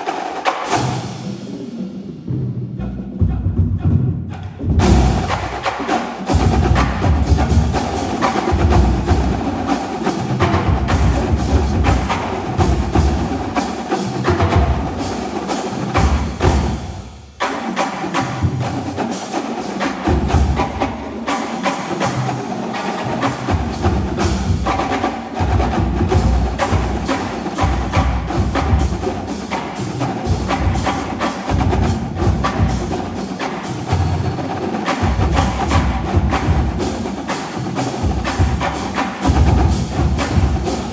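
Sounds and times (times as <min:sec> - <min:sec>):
snare drums: 0:00.0 - 0:02.5, 0:03.2 - 0:40.9
tenor drums: 0:00.0 - 0:40.9
bass drums: 0:02.3 - 0:05.6, 0:06.3 - 0:09.5.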